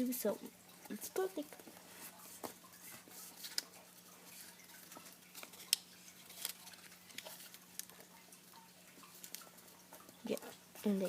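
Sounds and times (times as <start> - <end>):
paper rustling and crinkling: 1.6 - 8.1.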